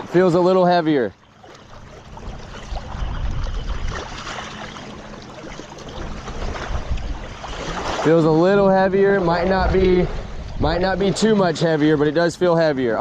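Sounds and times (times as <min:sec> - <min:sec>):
lake water washing against shore: 0:00.0 - 0:13.0
small ticks and splashes: 0:01.2 - 0:08.1
wind rumbling on microphone: 0:01.7 - 0:12.3.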